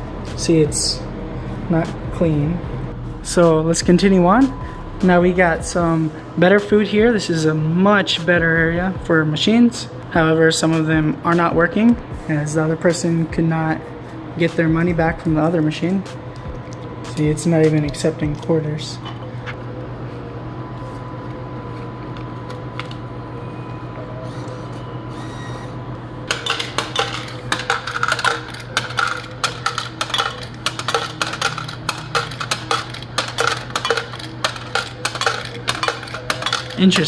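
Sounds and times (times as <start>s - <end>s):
vending machine hum: 0.0s - 37.0s
coins clinking into coin return: 26.3s - 37.0s.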